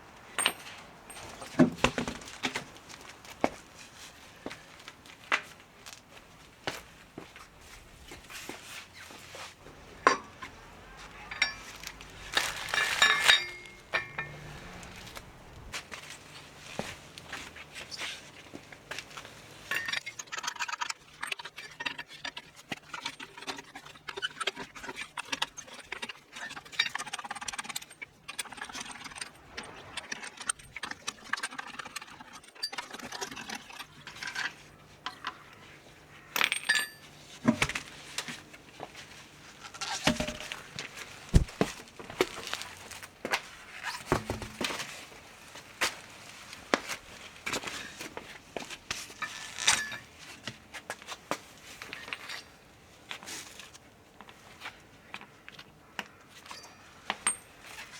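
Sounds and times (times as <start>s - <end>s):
metallic tool clinks and knocks: 0.4s - 1.7s, 10.0s - 15.5s, 36.4s - 37.1s.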